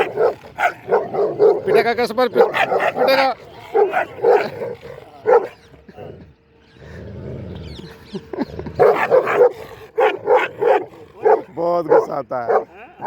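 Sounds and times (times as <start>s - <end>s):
dogs barking and yipping: 0.0s - 6.3s, 7.6s - 13.0s
dog low growl: 2.4s - 11.6s.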